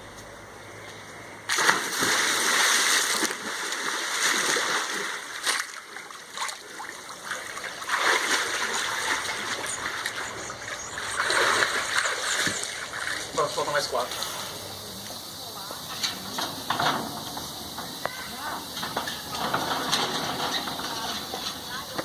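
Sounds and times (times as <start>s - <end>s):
water splashing in a pool: 1.5s - 14.2s.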